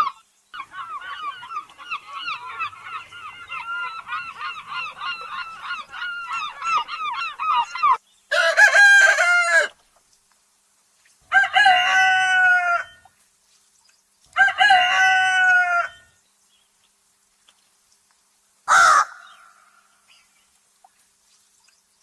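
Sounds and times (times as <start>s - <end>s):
rooster crowing: 8.3s - 9.8s, 11.3s - 13.0s, 14.4s - 16.1s, 18.7s - 19.2s.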